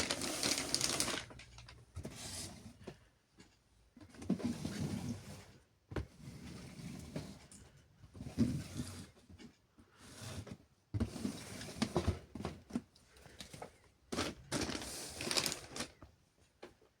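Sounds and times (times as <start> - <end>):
plastic toys clicking and knocking: 0.0 - 1.8.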